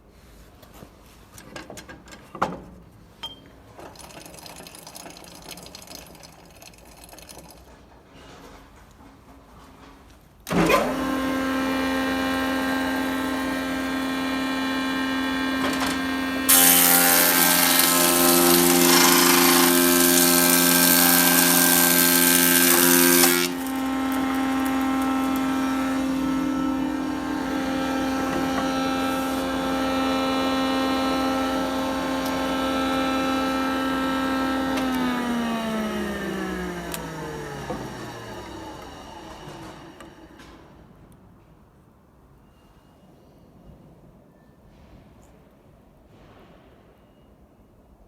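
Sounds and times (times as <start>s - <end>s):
planer cutting board: 10.5s - 40.3s
planer motor humming: 10.5s - 40.6s.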